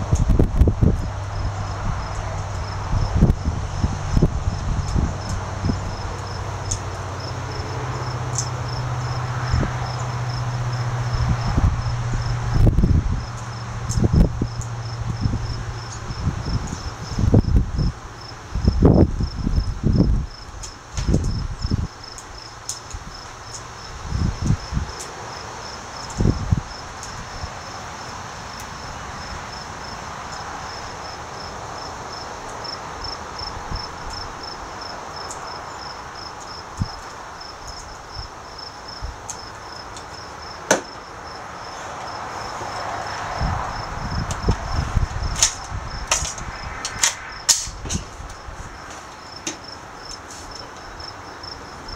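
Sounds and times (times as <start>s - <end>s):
insects chirping: 0.1s - 51.9s
sharp crack: 40.6s - 41.1s, 45.3s - 48.4s.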